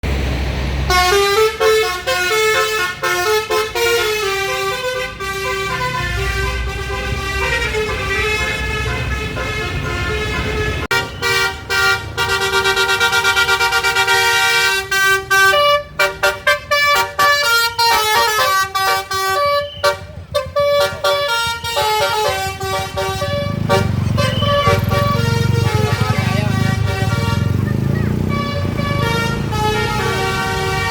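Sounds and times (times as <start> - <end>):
bus engine running: 0.0 - 30.9
musical bus horn melodies: 0.9 - 30.9.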